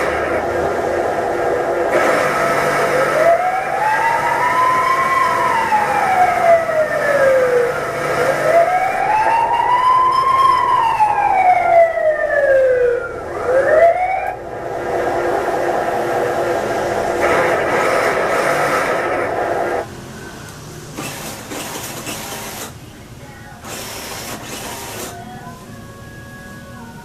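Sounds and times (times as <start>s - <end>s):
electronic wailing siren: 0.0s - 19.9s
steady hum: 0.0s - 27.0s.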